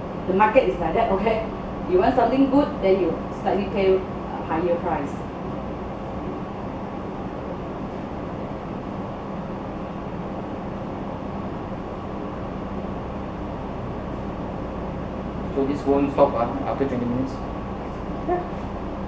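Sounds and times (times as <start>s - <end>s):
constant low hum: 0.0s - 19.0s.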